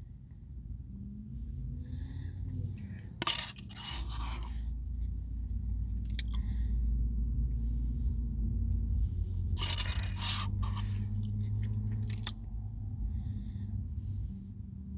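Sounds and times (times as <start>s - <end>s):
steady low hum: 0.0s - 14.9s
spoon scraping ice cream cup: 3.2s - 4.6s, 9.6s - 12.3s.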